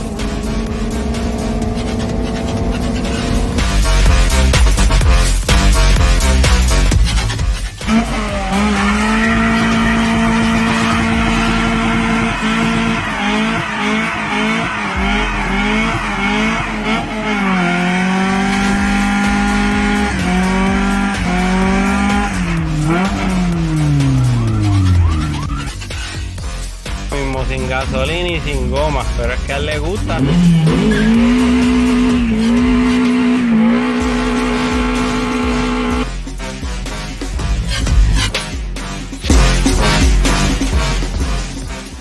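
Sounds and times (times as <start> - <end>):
car engine revving: 0.0 - 42.0
tyres squealing: 7.6 - 26.2, 30.0 - 35.5.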